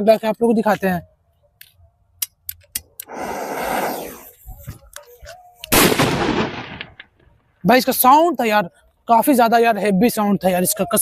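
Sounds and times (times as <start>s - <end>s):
fuse hissing: 3.0s - 4.4s
firecracker bang with echo: 5.7s - 7.0s.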